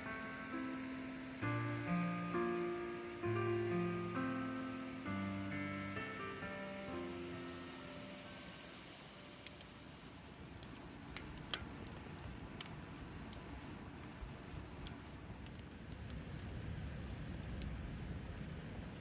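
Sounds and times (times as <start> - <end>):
low fire rumble: 8.4 - 19.0
campfire crackling: 8.8 - 19.0.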